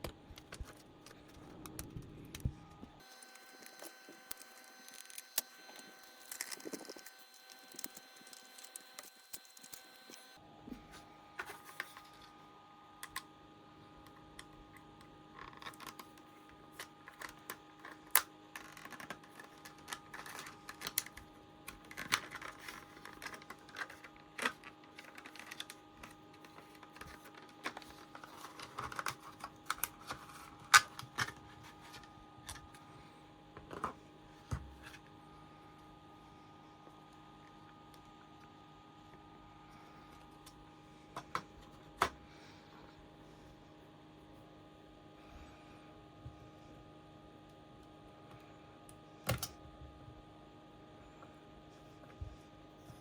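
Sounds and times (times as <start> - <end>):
faint steady hum: 0.0 - 53.0
plastic packaging rustling: 3.0 - 10.2, 17.0 - 32.1
plastic items clicking and tapping: 15.4 - 32.6.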